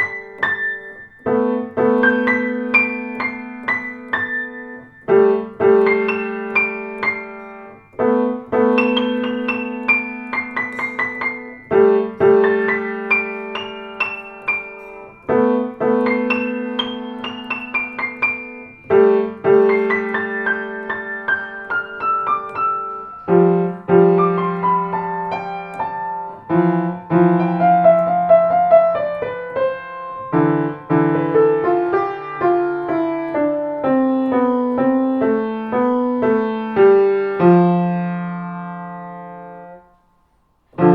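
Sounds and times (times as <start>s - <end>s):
solo piano: 0.0s - 40.9s.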